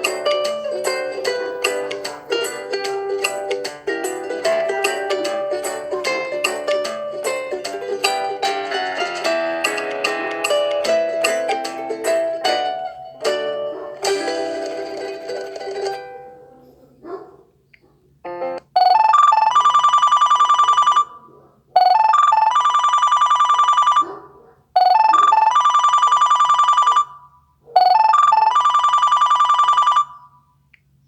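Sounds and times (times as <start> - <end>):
plucked ringtone notes: 0.0 - 16.3
electronic ringtone with warbling trill: 18.3 - 21.2, 21.8 - 24.0, 24.8 - 27.2, 27.8 - 30.3.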